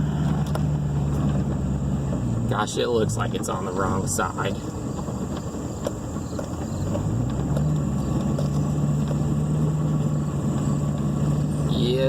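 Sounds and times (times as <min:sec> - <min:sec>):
light rattles in cab: 0:00.0 - 0:12.0
truck engine running: 0:00.0 - 0:12.0.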